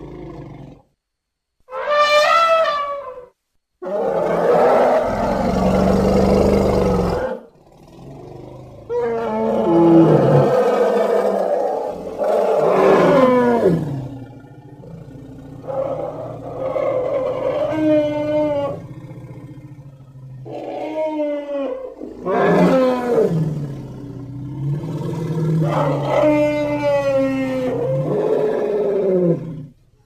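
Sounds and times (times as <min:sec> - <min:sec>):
elephant calls: 0:01.7 - 0:06.0, 0:15.5 - 0:19.4.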